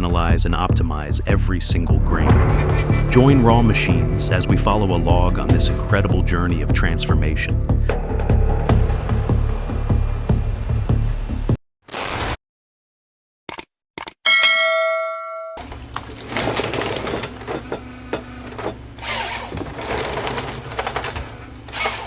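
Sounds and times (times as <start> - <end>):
bright chime ding: 14.3 - 15.6.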